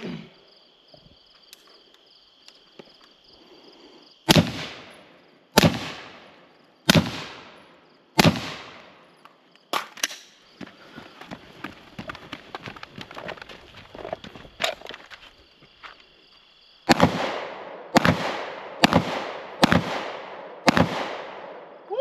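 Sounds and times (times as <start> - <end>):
gunshots echoing: 4.3 - 7.6, 8.2 - 9.0, 16.9 - 21.7
quieter sharp cracks: 4.3 - 10.4, 16.9 - 21.7.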